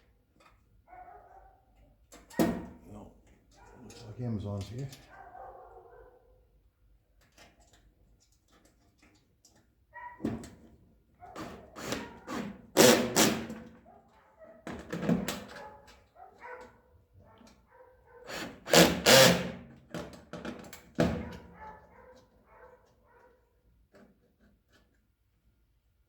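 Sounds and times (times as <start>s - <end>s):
dog barking: 0.8s - 1.7s, 3.5s - 4.1s, 4.9s - 6.5s, 9.9s - 10.4s, 11.2s - 12.5s, 13.7s - 18.4s, 21.1s - 23.6s.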